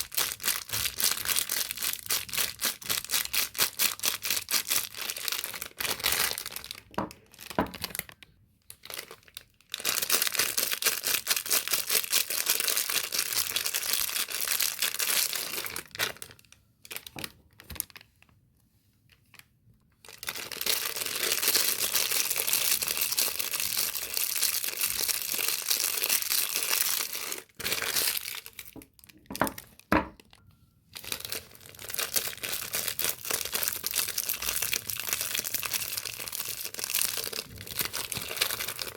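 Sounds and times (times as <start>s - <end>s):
packaging tearing and crinkling: 0.0s - 8.2s, 20.1s - 30.3s, 31.0s - 38.9s.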